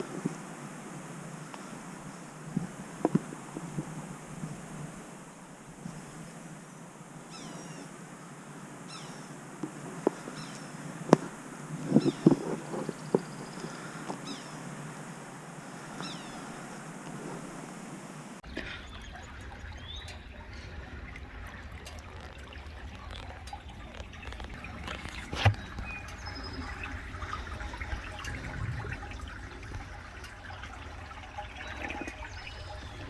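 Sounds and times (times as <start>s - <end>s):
low rumble: 18.4s - 33.0s.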